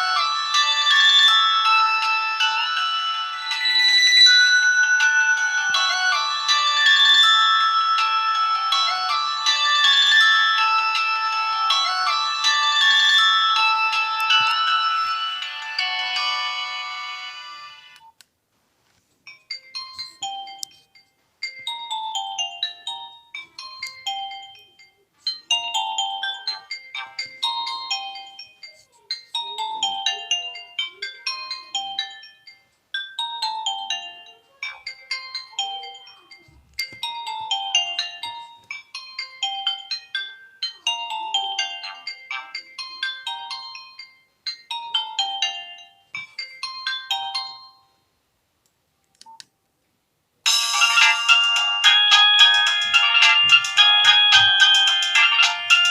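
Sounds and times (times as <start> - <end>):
mobile phone ringtone melody: 0.0 - 18.1, 19.3 - 48.2, 50.5 - 55.9.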